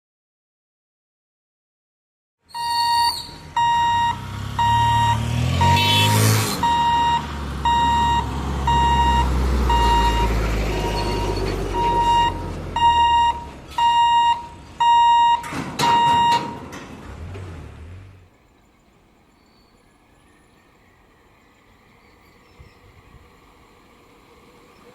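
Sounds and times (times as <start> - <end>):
low engine rumble: 2.5 - 24.9
electronic warning beeps: 2.6 - 16.7.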